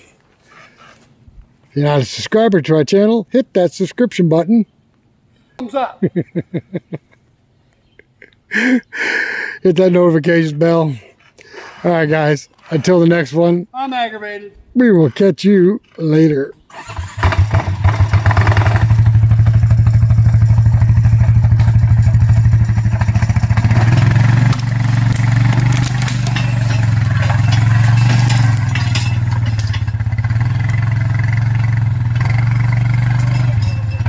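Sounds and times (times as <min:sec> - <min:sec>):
quad bike engine running: 0:16.8 - 0:34.0.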